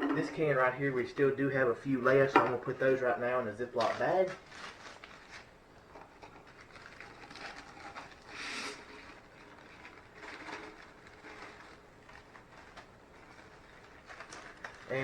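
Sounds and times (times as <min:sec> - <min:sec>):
chips rustling into plastic bag: 0:03.8 - 0:05.6, 0:06.4 - 0:15.0.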